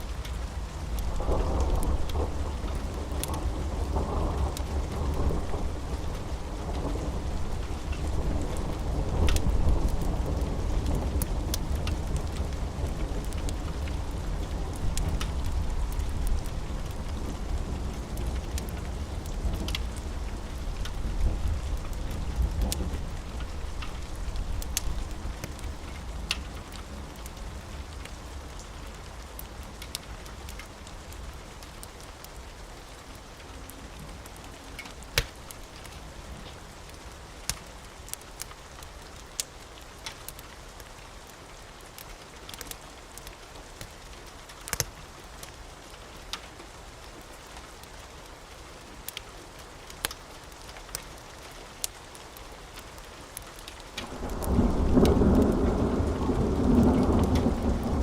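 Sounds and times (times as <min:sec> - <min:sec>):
wood fire crackling and popping: 0:00.0 - 0:32.4, 0:33.0 - 0:58.0
steady rain: 0:00.0 - 0:58.0
low thunder rumble: 0:00.7 - 0:26.3, 0:54.0 - 0:58.0.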